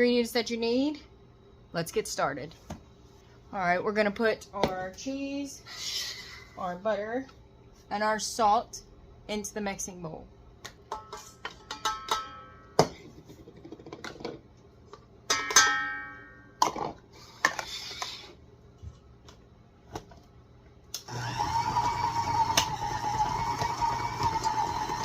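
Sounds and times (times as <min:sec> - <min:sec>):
stand mixer whining: 0:21.1 - 0:25.0.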